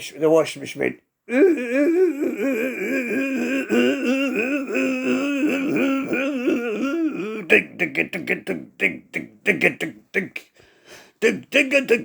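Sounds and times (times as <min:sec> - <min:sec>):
person imitating washing machine: 0:01.3 - 0:10.4.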